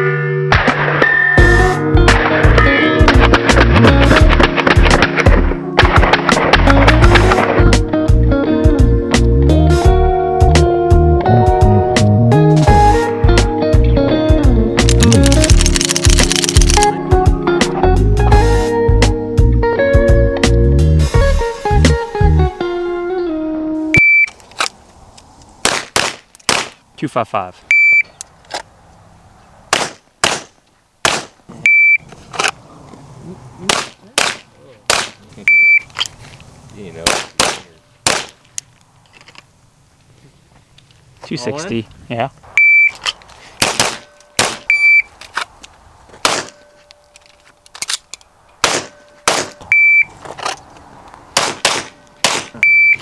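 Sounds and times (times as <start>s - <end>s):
gunshots: 14.9s - 17.0s, 25.6s - 26.8s, 29.7s - 31.4s, 33.6s - 35.3s, 37.0s - 38.4s, 43.6s - 44.8s, 46.2s - 46.6s, 48.6s - 49.6s, 51.4s - 52.7s
shot timer start beep: 49.7s - 50.1s, 52.6s - 53.0s.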